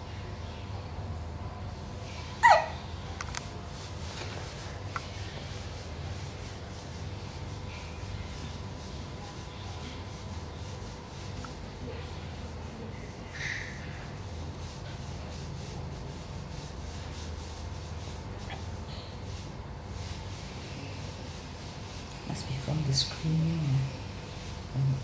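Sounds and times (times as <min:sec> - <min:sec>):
child hiccuping: 0:02.4 - 0:02.8.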